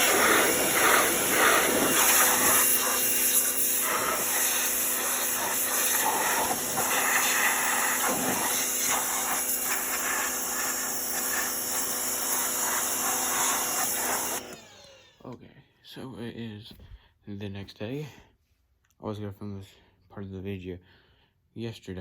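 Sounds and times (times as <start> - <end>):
high-pressure spray hissing: 0.0 - 14.6
pressure washer machine hum: 0.0 - 15.2.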